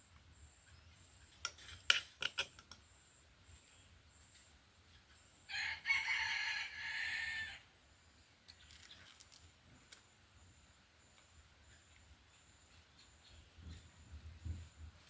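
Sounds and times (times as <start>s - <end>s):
rooster crowing: 5.5s - 7.7s.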